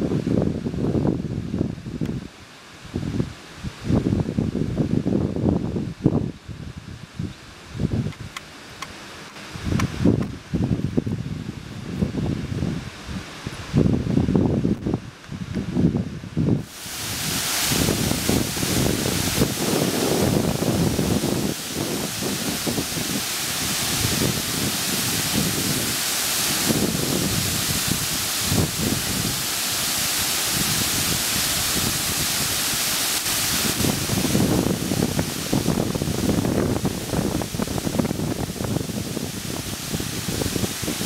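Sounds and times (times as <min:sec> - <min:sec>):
wind buffeting microphone: 0:00.0 - 0:41.0
water rushing into spillway shaft: 0:15.6 - 0:41.0.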